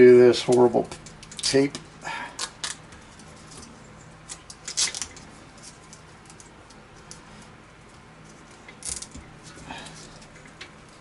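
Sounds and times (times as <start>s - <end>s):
tape ripping: 4.3s - 5.3s.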